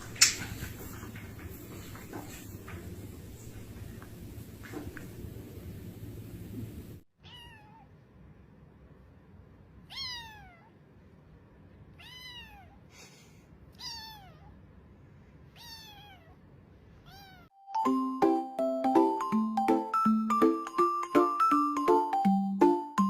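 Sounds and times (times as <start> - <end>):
kitten meowing: 7.2 - 7.9, 9.8 - 10.8, 12.0 - 12.8, 13.7 - 14.6, 15.5 - 16.4, 17.0 - 17.5.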